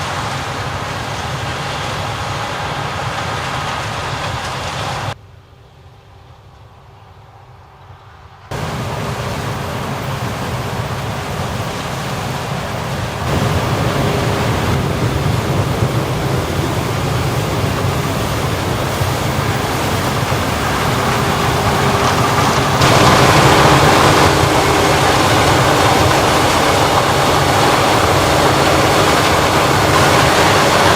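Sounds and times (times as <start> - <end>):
heavy farm machinery running: 8.5 - 30.9.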